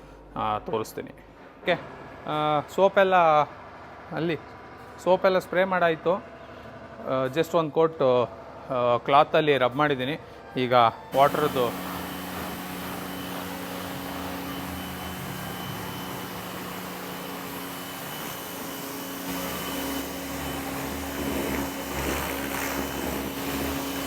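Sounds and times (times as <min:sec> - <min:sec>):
pressure washer motor humming: 0:11.1 - 0:24.0
high-pressure water spray: 0:11.2 - 0:24.0.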